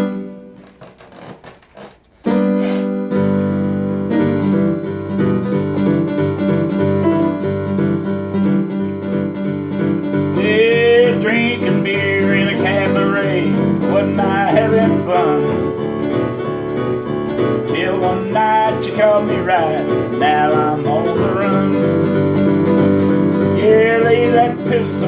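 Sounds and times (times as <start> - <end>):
keyboard and guitar music: 0.0 - 1.2, 2.0 - 25.0
keyboard backing with bass: 2.3 - 25.0
person singing: 10.4 - 16.3, 17.3 - 22.4, 23.2 - 25.0.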